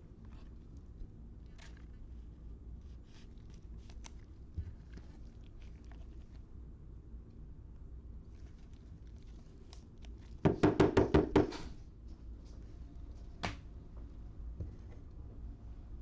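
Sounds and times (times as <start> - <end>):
knocks on a hard surface: 10.5 - 11.6.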